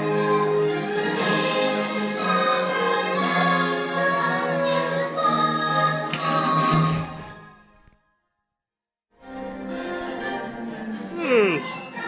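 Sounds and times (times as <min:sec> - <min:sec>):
choir singing held chords: 0:00.0 - 0:07.0.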